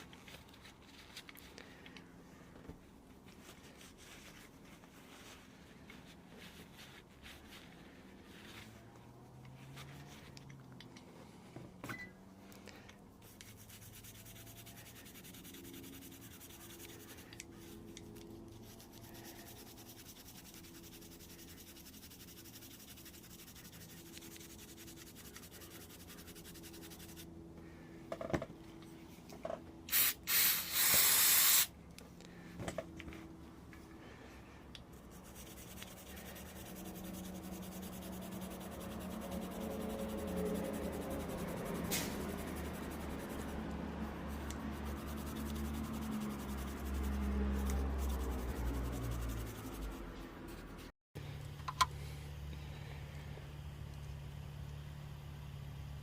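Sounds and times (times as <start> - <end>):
aerosol can spraying: 29.9 - 31.7.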